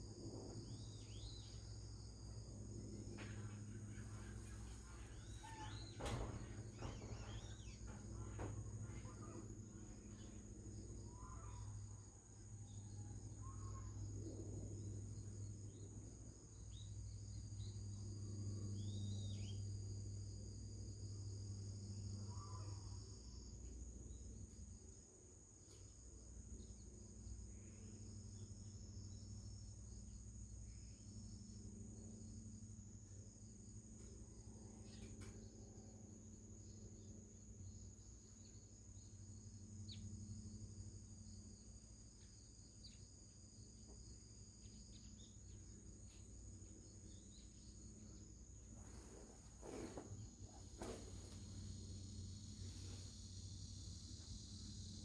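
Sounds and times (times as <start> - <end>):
low hum: 0.0 - 22.3
bird chirps: 3.3 - 9.5
insect trilling: 3.8 - 14.2.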